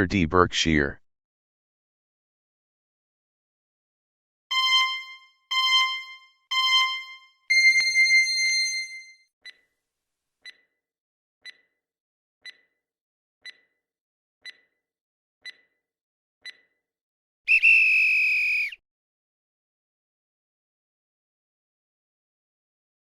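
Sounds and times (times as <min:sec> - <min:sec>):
electronic timer ticks: 0:04.5 - 0:08.2, 0:10.4 - 0:10.7, 0:11.4 - 0:11.8, 0:12.4 - 0:12.8, 0:13.4 - 0:13.8, 0:14.4 - 0:14.8, 0:15.4 - 0:15.8, 0:16.4 - 0:16.8
electronic alarm tone: 0:04.5 - 0:09.2.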